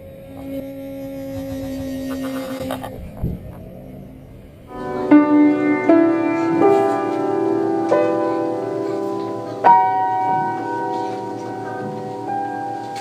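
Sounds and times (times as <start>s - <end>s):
slow piano music: 3.8s - 13.0s.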